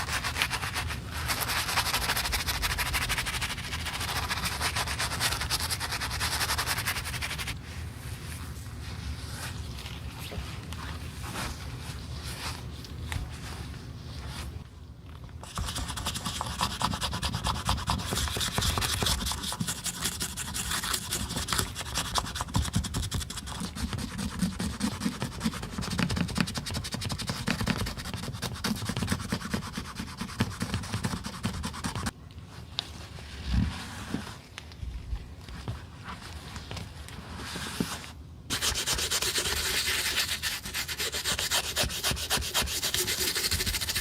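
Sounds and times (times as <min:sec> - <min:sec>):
rubbing and scraping on shoe: 0:00.0 - 0:07.6, 0:35.6 - 0:44.0.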